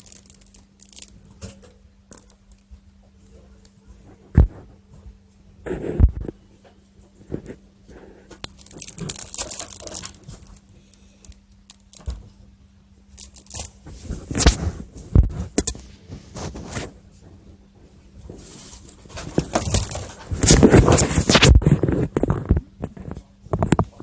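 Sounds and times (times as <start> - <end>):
packaging rustling: 8.4 - 10.7, 18.3 - 21.6.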